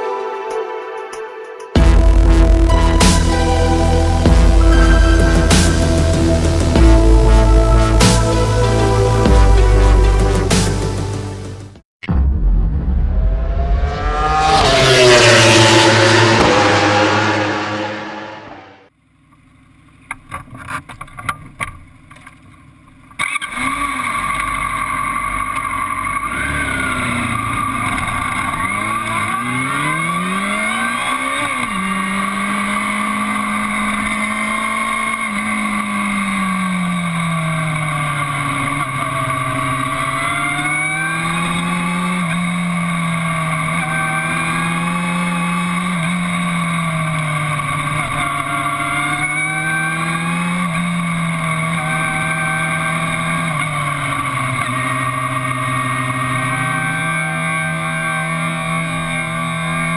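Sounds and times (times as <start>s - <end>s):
loud falling-pitch sound: 0.0s - 9.8s, 12.0s - 18.9s
motorcycle engine running: 24.2s - 59.9s.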